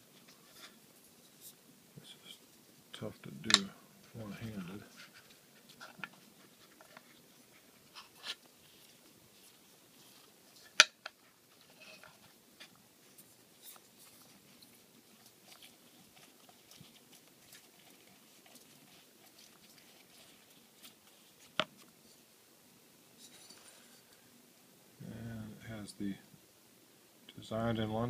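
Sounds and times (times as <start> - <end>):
scraping and rustling of metal box: 10.0 - 21.6, 23.2 - 24.1.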